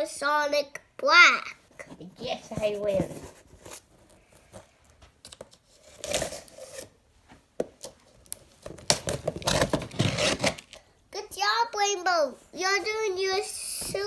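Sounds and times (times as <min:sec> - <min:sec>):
packaging tearing and crinkling: 0:05.6 - 0:06.9, 0:07.8 - 0:10.8.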